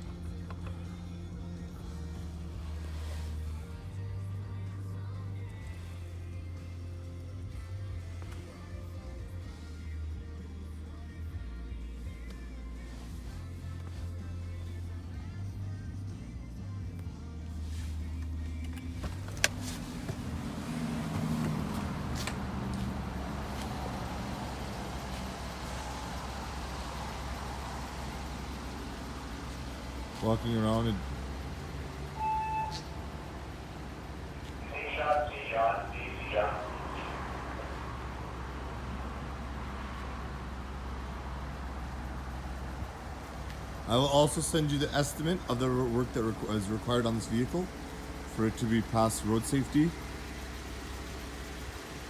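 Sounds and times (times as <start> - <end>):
car engine humming: 0.0 - 52.0.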